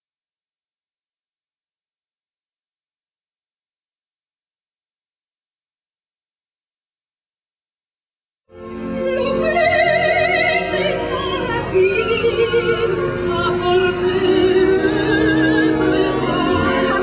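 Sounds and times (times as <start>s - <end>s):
operatic singing with accompaniment: 9.0s - 17.0s.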